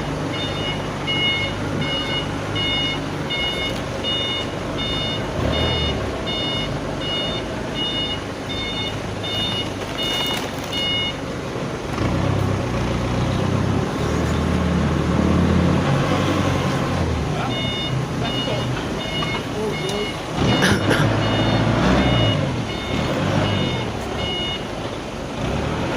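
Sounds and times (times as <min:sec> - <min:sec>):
reversing alarm beeping: 0:00.0 - 0:11.2, 0:17.4 - 0:24.7.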